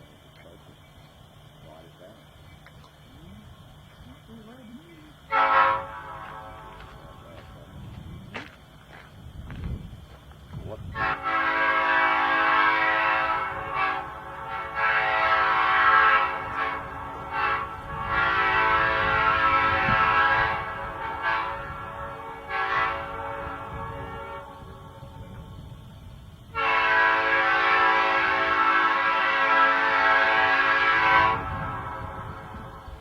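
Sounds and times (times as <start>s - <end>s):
locomotive air horn: 5.3s - 7.4s, 10.9s - 25.6s, 26.4s - 33.0s.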